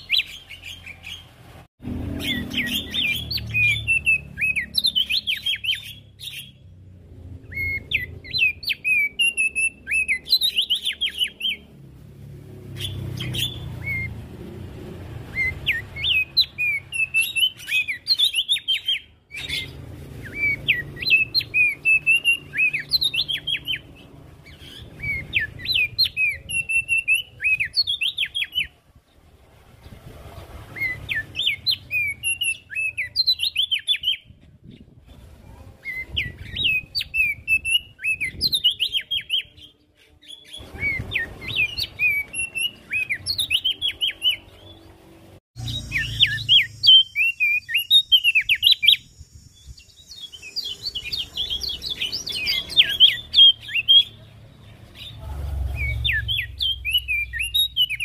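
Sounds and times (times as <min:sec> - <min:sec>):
bird twittering song: 0:00.0 - 0:01.3, 0:02.1 - 0:11.8, 0:12.6 - 0:35.2, 0:35.8 - 0:58.0.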